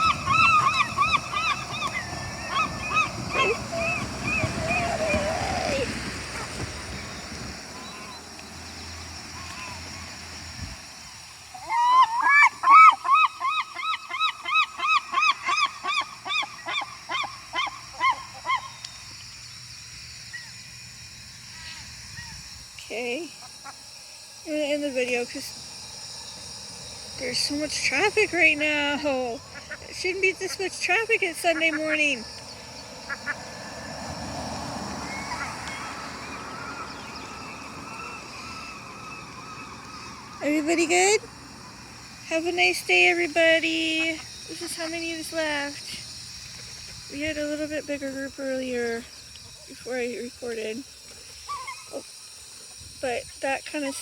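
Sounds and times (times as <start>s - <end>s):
gull calling: 0.0s - 8.3s, 11.5s - 18.9s, 35.0s - 42.5s, 51.4s - 52.1s.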